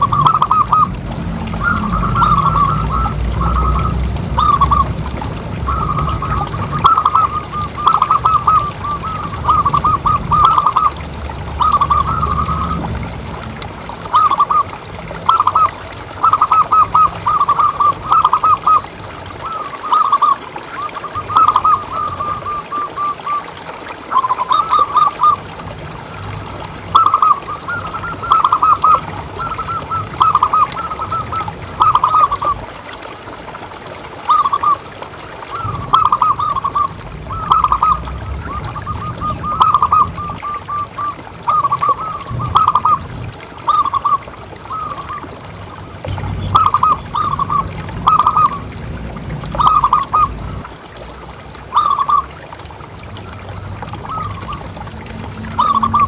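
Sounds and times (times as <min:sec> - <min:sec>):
dove cooing: 0:00.0 - 0:12.9, 0:15.3 - 0:23.4, 0:26.9 - 0:32.6, 0:35.4 - 0:45.4, 0:46.1 - 0:48.7, 0:49.5 - 0:50.6, 0:55.4 - 0:56.0.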